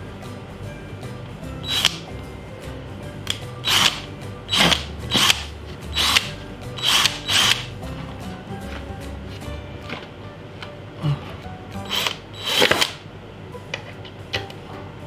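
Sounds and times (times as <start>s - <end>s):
background music: 0.0s - 15.0s
cordless drill driving screw: 1.6s - 2.0s, 3.6s - 7.7s, 11.9s - 13.0s.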